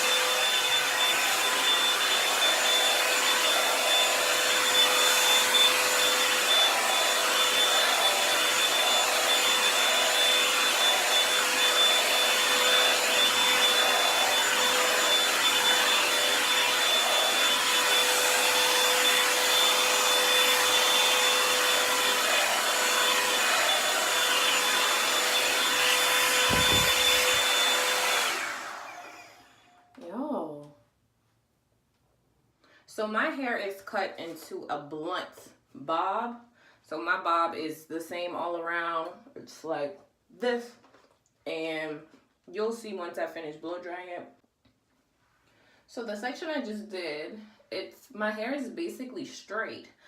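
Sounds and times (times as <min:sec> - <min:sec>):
hair dryer running: 0:00.0 - 0:29.9.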